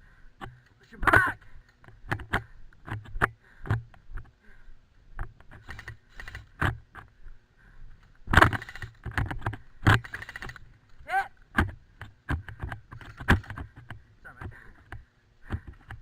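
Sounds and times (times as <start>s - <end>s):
knocks clicks and rattles: 8.3s - 16.0s.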